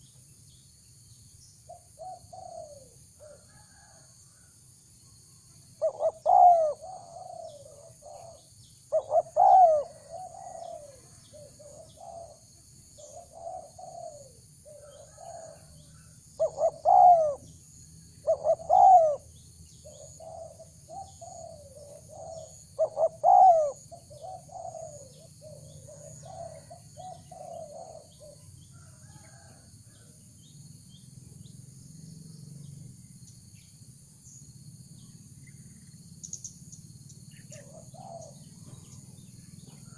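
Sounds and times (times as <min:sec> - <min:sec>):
doves cooing: 0:01.7 - 0:04.0, 0:05.8 - 0:15.8, 0:16.4 - 0:17.5, 0:18.2 - 0:30.1, 0:37.4 - 0:39.9.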